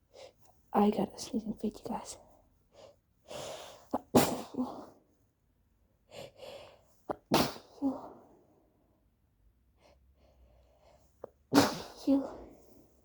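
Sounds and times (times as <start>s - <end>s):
woman sneezing: 3.9s - 4.9s, 7.1s - 8.1s, 11.5s - 12.4s.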